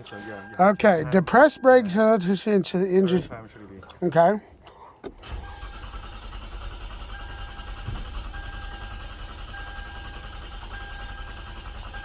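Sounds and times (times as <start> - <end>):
car engine idling: 4.5 - 12.0.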